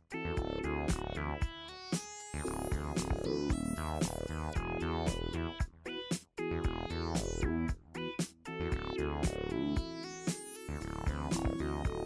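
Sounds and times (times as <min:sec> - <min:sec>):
electronic music with synthesizer: 0:00.2 - 0:12.0.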